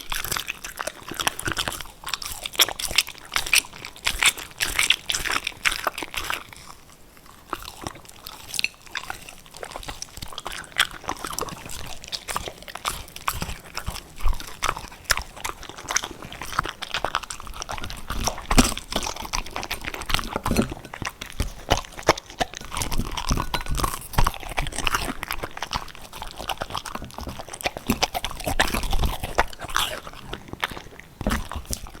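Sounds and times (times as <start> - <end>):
puppy crunching hard cookies: 0.0 - 32.0.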